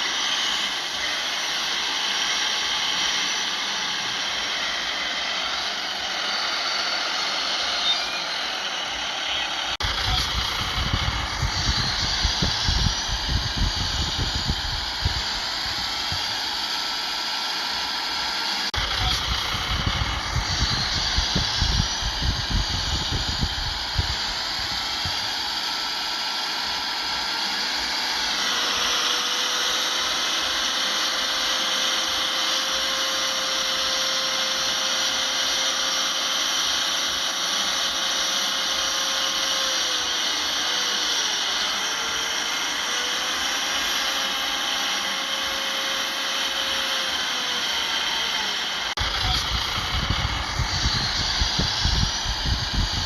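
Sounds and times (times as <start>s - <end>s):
engine revving whines: 0.0s - 53.0s
heavy diesel engines running: 7.4s - 16.6s, 18.7s - 25.6s, 48.9s - 53.0s.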